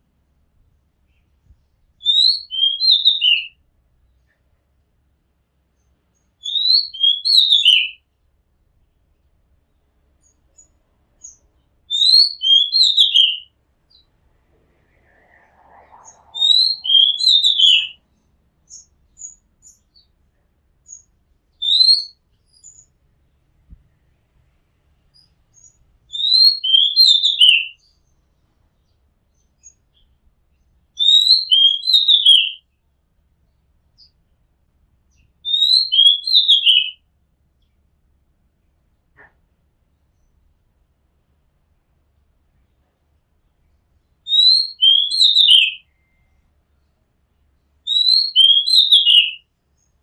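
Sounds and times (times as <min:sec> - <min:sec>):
bird singing whistled notes: 0:02.0 - 0:03.6, 0:06.1 - 0:08.0, 0:10.2 - 0:14.1, 0:15.0 - 0:20.2, 0:20.8 - 0:22.9, 0:25.1 - 0:28.1, 0:31.0 - 0:32.7, 0:35.1 - 0:37.0, 0:44.2 - 0:46.4, 0:47.9 - 0:49.9.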